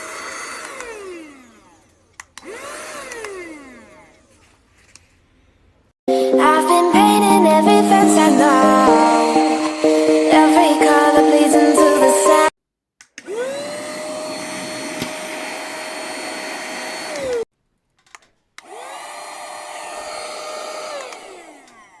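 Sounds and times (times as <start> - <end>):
mini vacuum cleaner whining: 0.0 - 4.4, 9.0 - 10.0, 13.2 - 17.5, 18.6 - 22.0.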